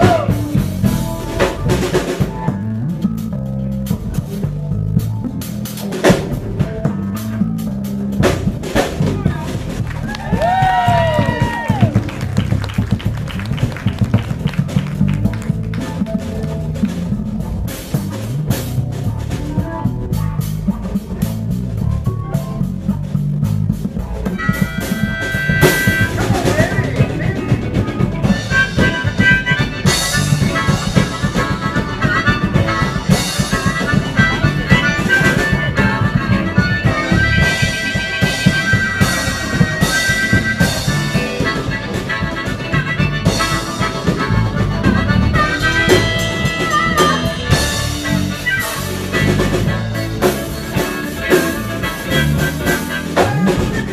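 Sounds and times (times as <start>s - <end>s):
bass guitar: 0.0s - 53.9s
drum kit: 0.0s - 53.9s
lead instrument high held notes: 23.8s - 53.9s.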